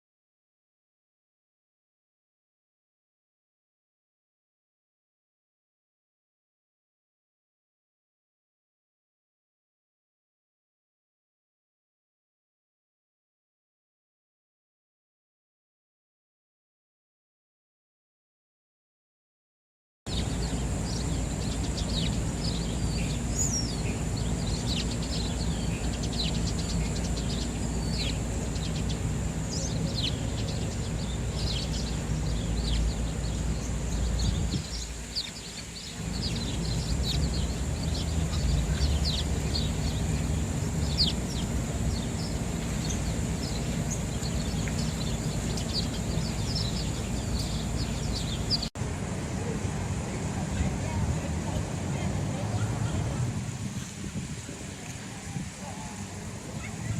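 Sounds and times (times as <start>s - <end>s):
low rumble of city noise: 20.1s - 56.9s
sparrows chirping: 20.1s - 56.9s.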